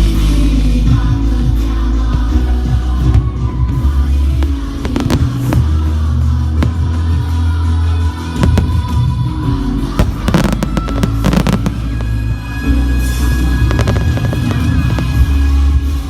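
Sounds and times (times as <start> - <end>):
loud music with heavy bass: 0.0 - 16.0
fireworks bursting and crackling: 3.2 - 7.5, 8.2 - 16.0.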